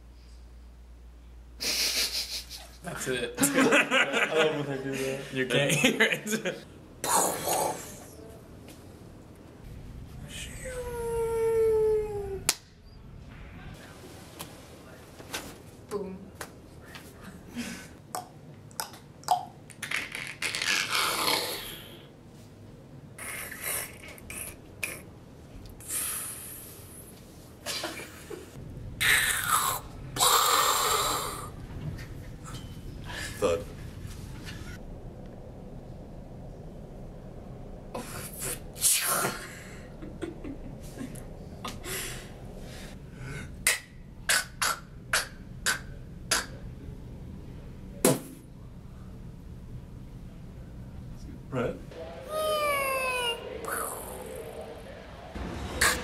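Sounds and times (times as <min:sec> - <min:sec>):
mouth-made explosion blast: 0:51.9 - 0:56.0.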